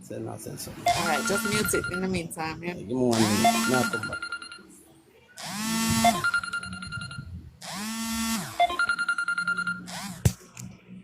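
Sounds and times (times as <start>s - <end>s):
electronic phone ringtone: 0.9s - 2.2s, 3.2s - 4.8s, 5.4s - 10.2s.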